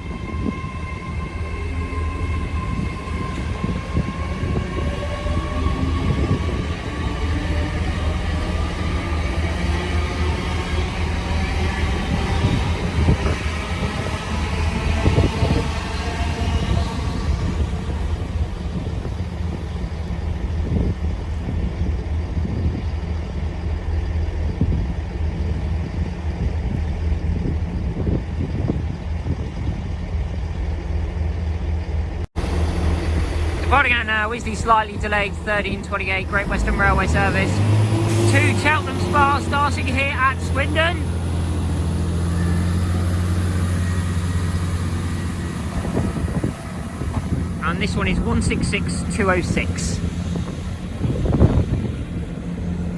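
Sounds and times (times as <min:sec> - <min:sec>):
diesel train engine idling: 0:00.0 - 0:52.9.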